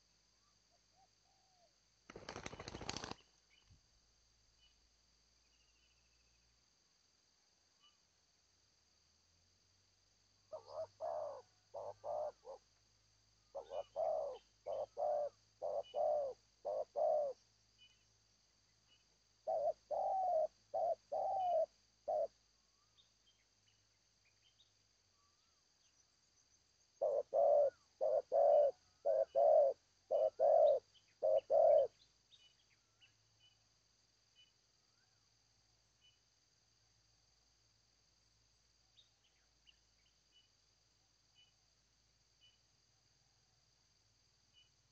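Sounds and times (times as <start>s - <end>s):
dove cooing: 10.5s - 12.6s, 13.5s - 17.4s, 19.4s - 22.3s, 27.0s - 31.9s.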